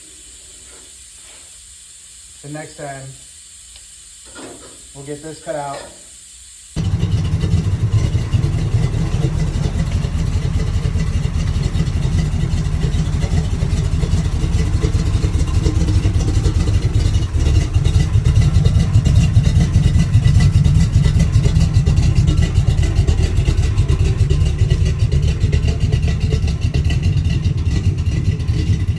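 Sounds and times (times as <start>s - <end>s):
vehicle engine running loudly: 6.8s - 28.9s.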